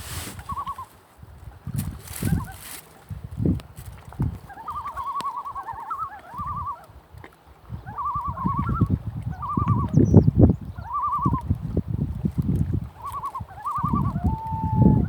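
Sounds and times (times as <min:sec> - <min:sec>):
loons giving tremolo calls: 0:00.0 - 0:01.0, 0:02.1 - 0:02.8, 0:04.4 - 0:06.9, 0:07.8 - 0:10.0, 0:10.7 - 0:11.5, 0:13.0 - 0:15.0.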